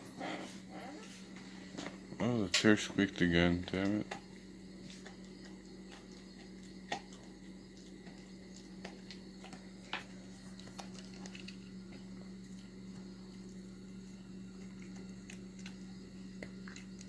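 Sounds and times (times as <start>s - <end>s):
steady low hum: 0.0s - 17.0s
puppy gnawing on a chew: 0.1s - 17.0s.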